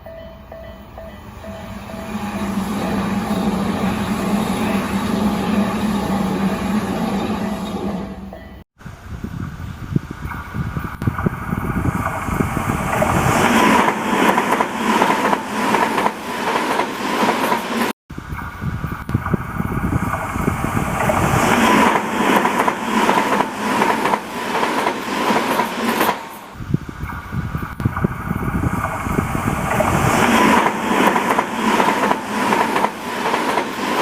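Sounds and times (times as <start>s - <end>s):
wheels clicking on rail joints: 21.0s - 34.0s.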